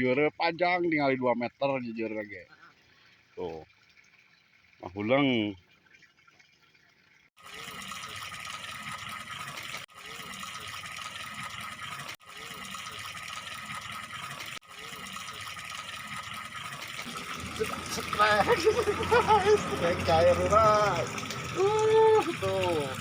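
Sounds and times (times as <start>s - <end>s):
stream water rushing: 10.4s - 23.0s.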